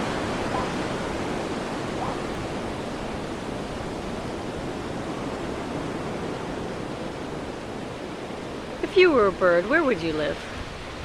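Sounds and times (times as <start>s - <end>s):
ocean surf: 0.0s - 11.0s
wind: 0.0s - 11.0s.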